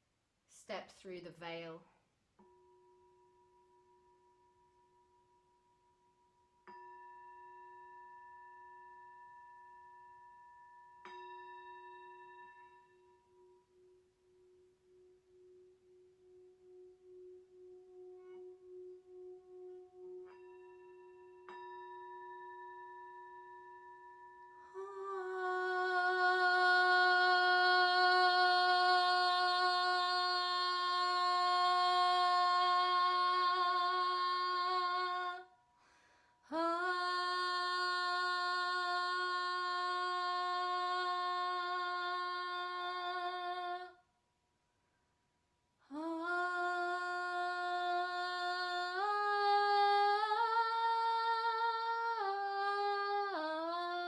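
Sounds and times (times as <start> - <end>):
ringing sound-healing instruments: 2.4 - 43.3
person humming a long note: 24.6 - 35.5, 36.5 - 44.0.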